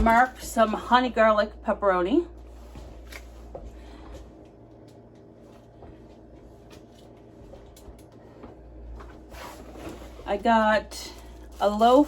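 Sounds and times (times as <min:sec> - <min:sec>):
steady low hum: 0:00.0 - 0:12.0
packages clicking and rustling: 0:09.1 - 0:12.0.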